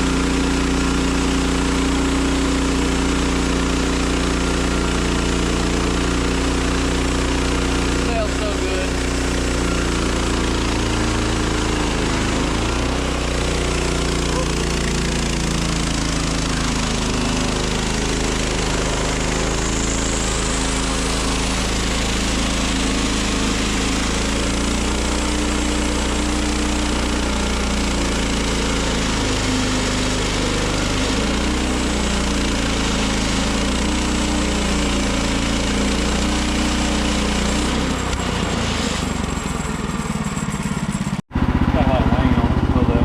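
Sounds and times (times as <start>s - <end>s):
sawmill engine running: 0.0s - 43.0s.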